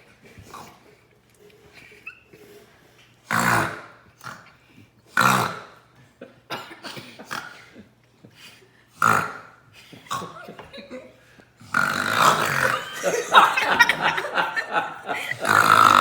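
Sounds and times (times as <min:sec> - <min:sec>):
kids making burp noises: 0:11.7 - 0:16.0
kids grunting: 0:12.3 - 0:16.0.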